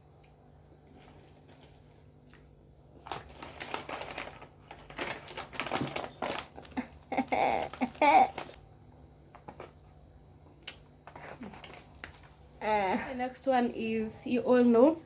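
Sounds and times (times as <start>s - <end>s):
snack packaging crinkling: 0.2s - 8.7s, 10.7s - 12.4s.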